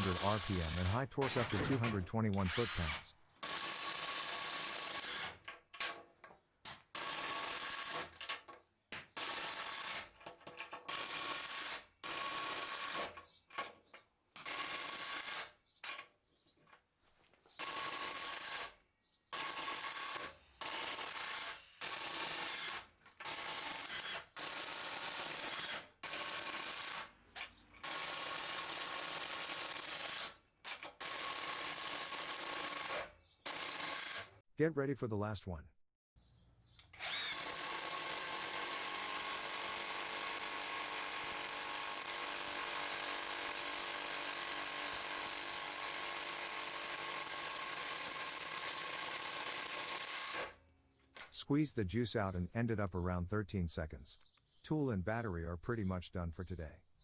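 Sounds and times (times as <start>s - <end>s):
impact driver hammering screws: 0.0s - 6.0s, 19.4s - 34.3s, 36.8s - 50.5s.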